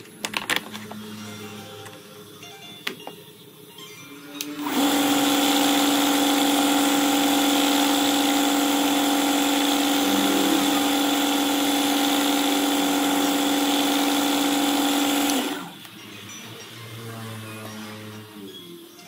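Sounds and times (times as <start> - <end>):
power tool motor humming: 4.6 - 15.8.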